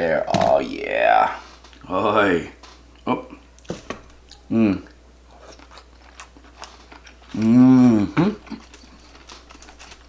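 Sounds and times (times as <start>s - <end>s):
eating clicks and smacks: 2.6s - 10.0s
man humming mmm of enjoyment: 4.5s - 4.9s, 7.3s - 8.6s.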